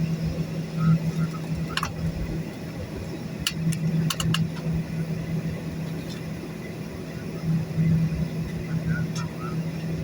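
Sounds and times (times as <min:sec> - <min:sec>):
airliner cabin hum and rumble: 0:00.0 - 0:10.0
sharp clicks or rattles: 0:03.4 - 0:04.5.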